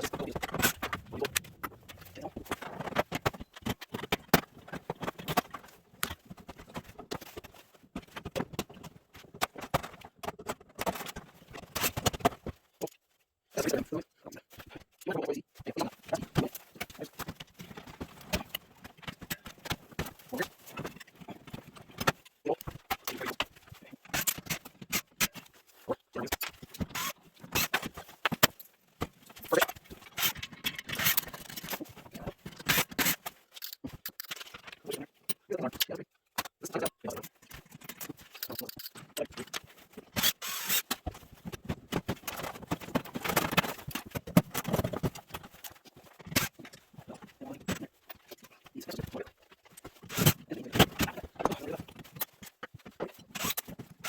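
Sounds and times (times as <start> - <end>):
tools and metal parts clinking: 16.0 - 54.0
metal tools clicking and scraping: 29.3 - 41.2.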